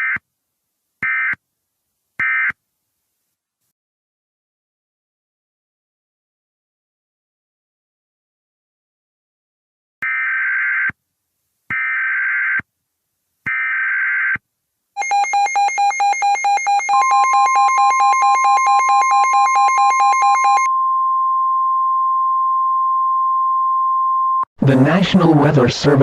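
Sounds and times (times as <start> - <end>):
steady warning alarm tone: 15.0 - 21.3.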